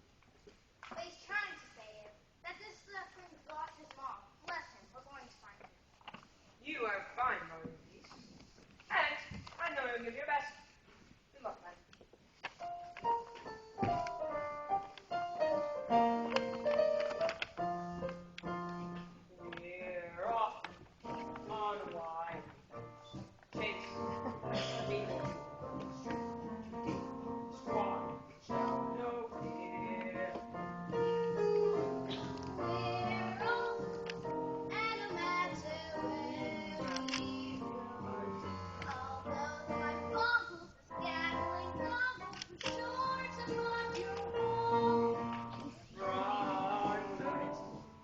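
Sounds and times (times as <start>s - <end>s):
instrumental accompaniment: 12.5s - 19.6s, 20.8s - 48.0s
piano music: 12.5s - 48.0s
children singing: 32.2s - 33.8s, 45.9s - 47.5s.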